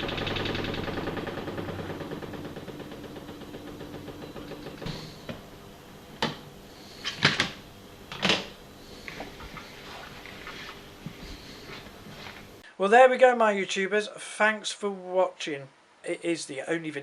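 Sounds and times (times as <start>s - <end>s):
spin dryer motor winding down: 0.0s - 12.6s
sharp knocks and clicks: 0.1s - 5.4s, 6.2s - 6.4s.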